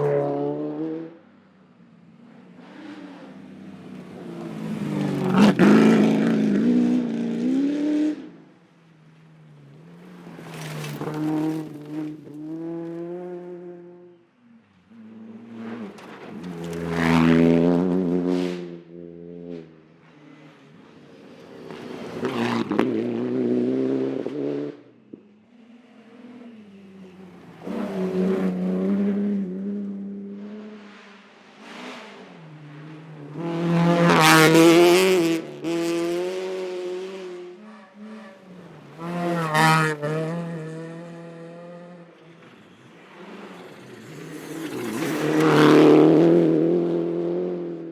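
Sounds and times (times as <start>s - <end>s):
rally car engines revving: 0.0s - 47.9s
gravel noise: 2.6s - 6.3s, 9.2s - 13.0s, 42.2s - 46.1s.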